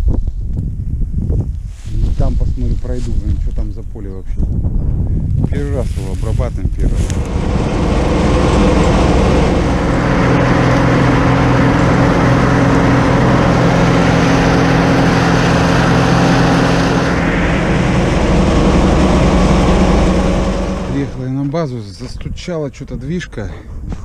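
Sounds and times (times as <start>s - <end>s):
vehicle engine running: 6.9s - 22.1s.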